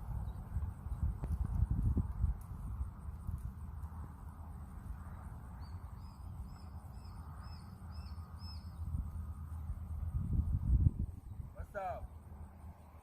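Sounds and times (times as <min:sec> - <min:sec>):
steady low rumble: 0:00.0 - 0:13.0
bird chirping: 0:05.1 - 0:09.0.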